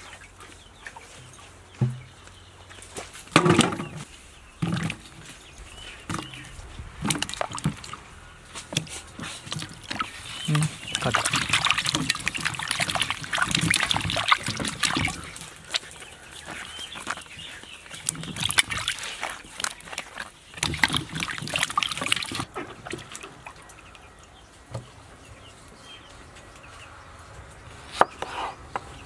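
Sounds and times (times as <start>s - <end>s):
water trickling and splashing: 0.0s - 26.6s
handling clicks and knocks: 0.9s - 2.4s, 3.2s - 8.0s.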